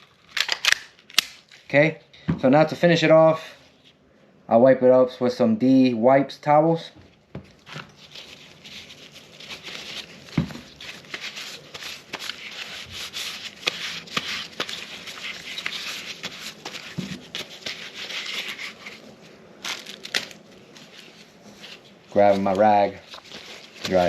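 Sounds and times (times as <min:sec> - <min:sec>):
wipe rubbing on pistol: 0:08.0 - 0:19.0.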